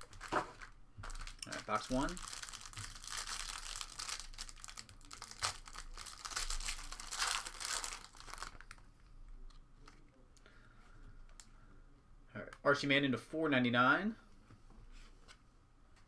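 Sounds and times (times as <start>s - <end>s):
plastic wrapping crinkling: 0.0s - 8.8s.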